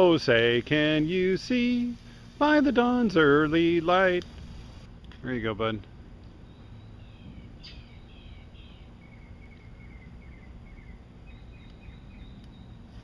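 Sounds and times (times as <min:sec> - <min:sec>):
low outdoor background noise: 0:00.0 - 0:13.0
songbird chirping: 0:06.3 - 0:13.0.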